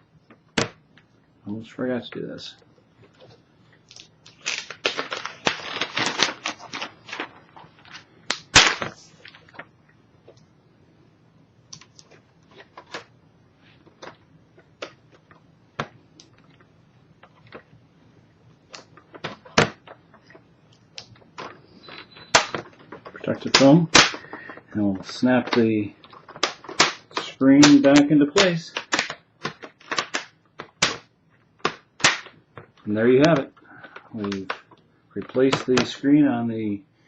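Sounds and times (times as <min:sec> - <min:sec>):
plastic film peeling: 0:03.2 - 0:09.7, 0:21.0 - 0:31.0
loud sharp snap: 0:08.3 - 0:09.0, 0:23.4 - 0:24.4, 0:26.4 - 0:32.4.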